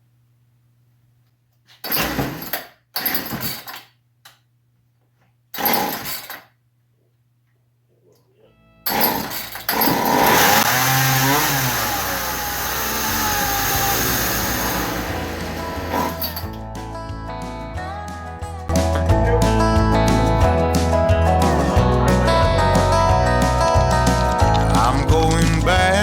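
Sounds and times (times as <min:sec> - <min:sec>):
chainsaw pull-starting: 0:05.6 - 0:06.5, 0:08.9 - 0:16.5
music: 0:08.4 - 0:09.2, 0:12.6 - 0:26.0.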